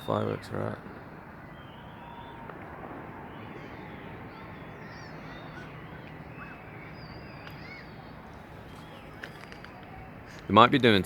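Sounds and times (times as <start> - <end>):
outdoor city hum: 0.0 - 11.0
high chirping bird calls: 3.2 - 10.4.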